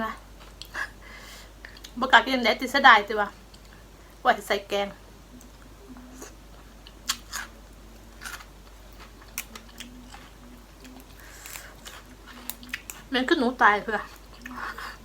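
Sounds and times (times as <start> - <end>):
person chewing food: 1.6 - 2.0, 5.2 - 13.1, 13.9 - 15.0.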